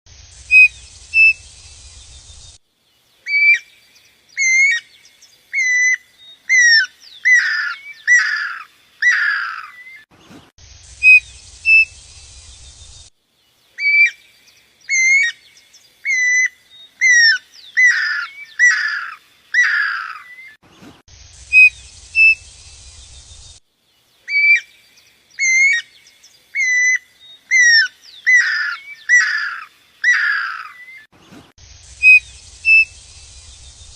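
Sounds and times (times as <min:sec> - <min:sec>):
bird whistling song: 0:00.4 - 0:02.6, 0:10.9 - 0:13.1, 0:21.4 - 0:23.6, 0:32.0 - 0:33.9.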